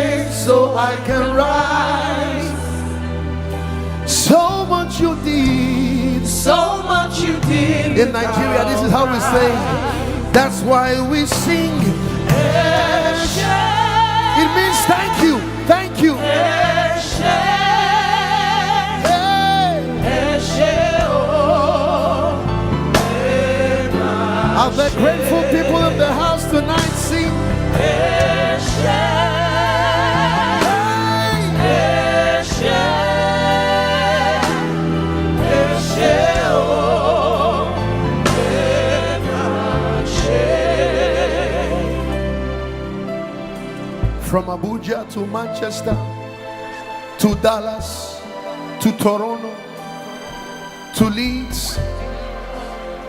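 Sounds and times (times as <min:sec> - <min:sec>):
choir singing gospel: 0:00.0 - 0:53.0
band with steady bass: 0:02.6 - 0:44.8
person singing with vibrato: 0:05.5 - 0:16.2.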